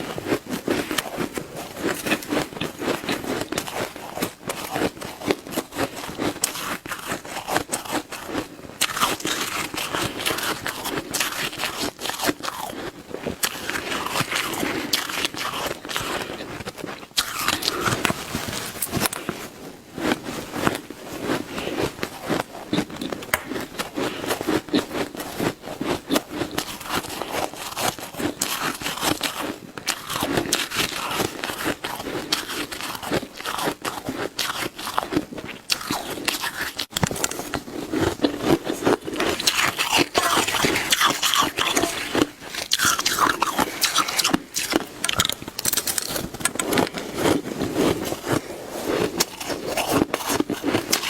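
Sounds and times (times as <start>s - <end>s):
ice being chewed crunching: 0.0s - 19.5s, 20.1s - 51.0s.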